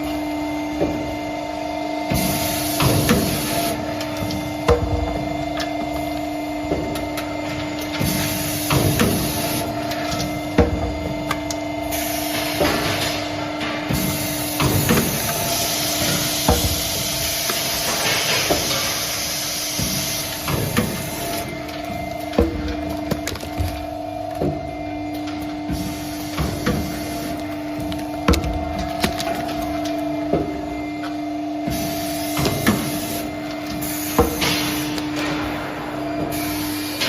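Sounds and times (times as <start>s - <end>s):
machine hiss: 11.8s - 13.2s, 13.9s - 21.5s, 31.7s - 37.0s.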